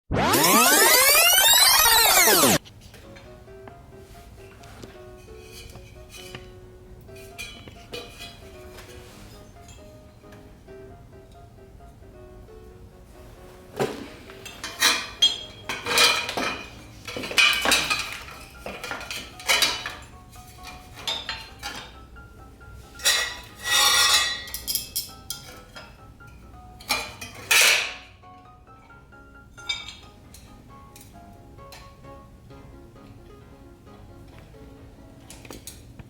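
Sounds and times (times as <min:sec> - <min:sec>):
soft background music: 0:02.6 - 0:36.0
metal tools clinking and scraping: 0:05.2 - 0:10.0, 0:14.4 - 0:22.0, 0:22.9 - 0:28.1, 0:29.6 - 0:31.9.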